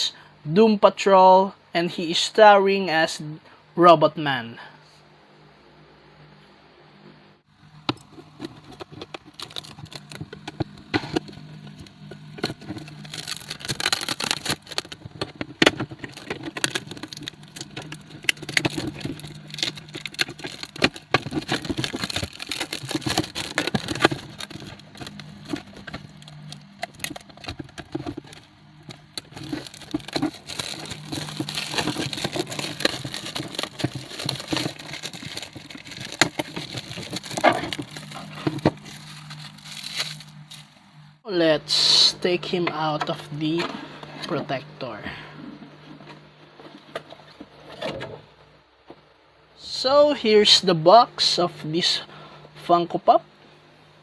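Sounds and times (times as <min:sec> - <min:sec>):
steady low hum: 0:00.0 - 0:54.0
plastic packaging crinkling: 0:07.8 - 0:40.9.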